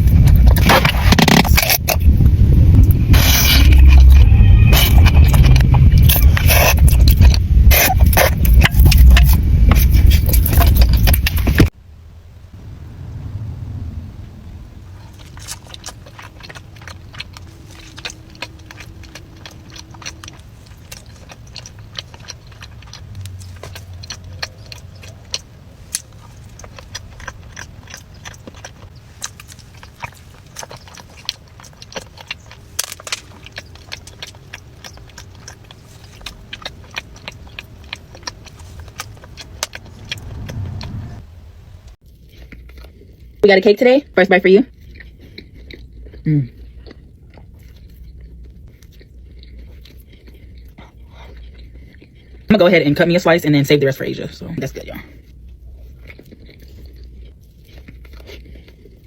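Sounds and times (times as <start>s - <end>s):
low rumble: 0.0s - 31.4s, 32.1s - 42.0s.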